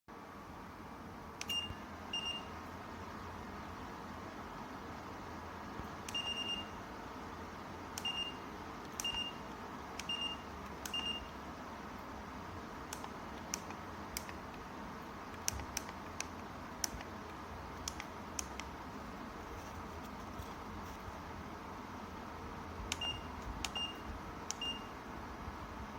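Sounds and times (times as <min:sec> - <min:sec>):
clicks: 0:12.9 - 0:14.7, 0:15.3 - 0:18.8, 0:22.9 - 0:23.8.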